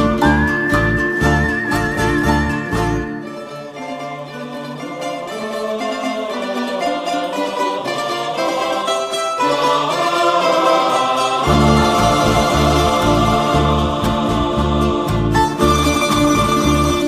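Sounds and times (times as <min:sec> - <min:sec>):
deep bass: 0:00.0 - 0:03.1, 0:11.5 - 0:17.0
plucked strings melody: 0:00.0 - 0:17.0.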